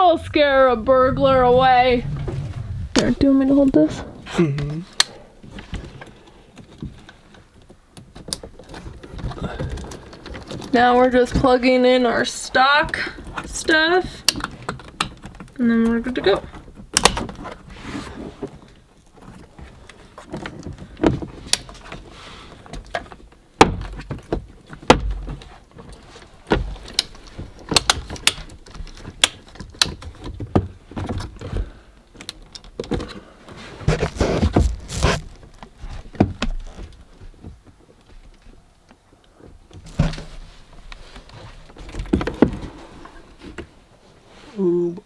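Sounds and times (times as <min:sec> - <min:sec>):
parts clicking and knocking: 0:22.7 - 0:33.2.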